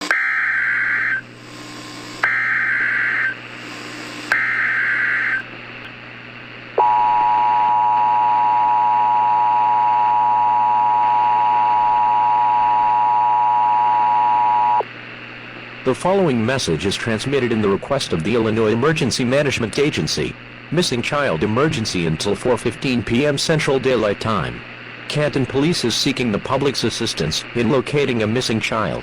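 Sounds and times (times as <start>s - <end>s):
fast high buzzing data tones: 0.0s - 5.5s, 6.8s - 14.9s
loud steady dual tone: 0.0s - 29.0s.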